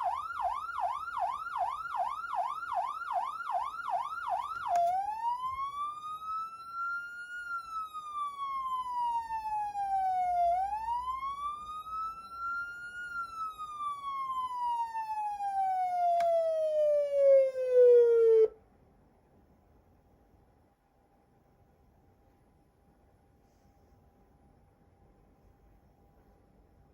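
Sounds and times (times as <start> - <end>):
electronic siren wailing: 0.0 - 18.5.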